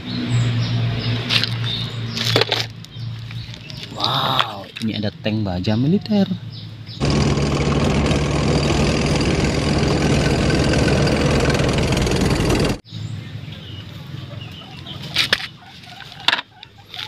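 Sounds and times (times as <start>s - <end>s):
tank engine rumble: 7.0s - 16.2s.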